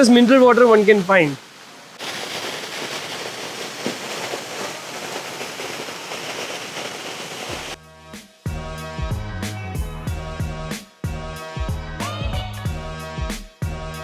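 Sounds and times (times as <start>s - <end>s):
waterfall rushing: 0.0s - 7.8s
music with low bass: 7.8s - 14.0s.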